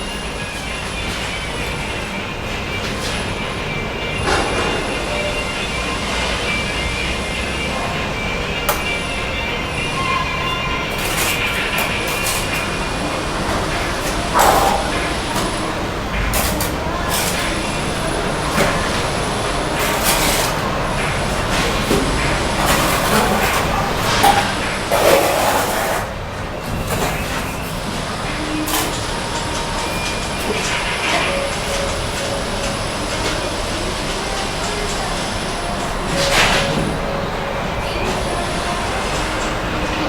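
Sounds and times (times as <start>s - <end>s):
trowel scraping mortar: 16.2s - 17.6s, 19.8s - 20.6s, 21.8s - 26.2s.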